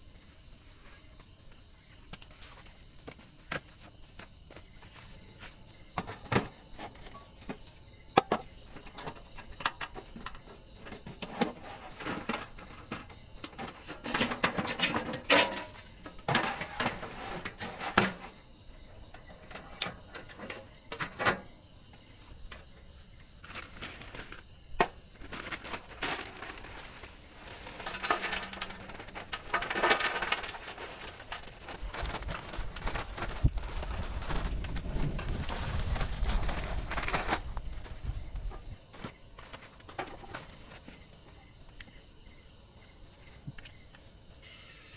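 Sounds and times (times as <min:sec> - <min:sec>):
rough rustling or scraping: 0:13.6 - 0:18.4, 0:23.4 - 0:24.5, 0:25.2 - 0:40.9.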